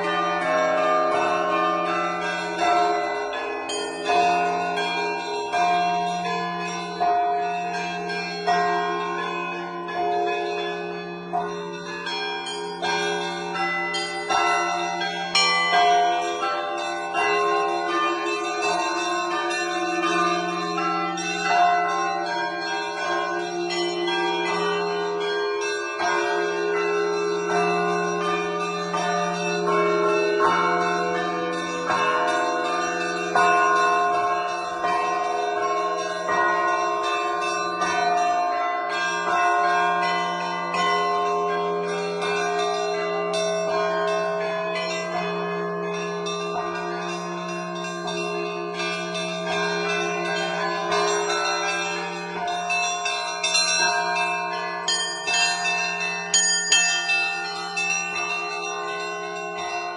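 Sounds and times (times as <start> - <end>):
church bells ringing: 0.0 - 59.9
low bell hum: 52.7 - 59.9.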